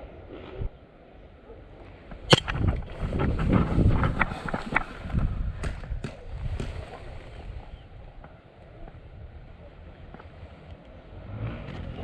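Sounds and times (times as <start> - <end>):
wind rumble on microphone: 0.0 - 12.0
airsoft gun shots: 2.3 - 2.7.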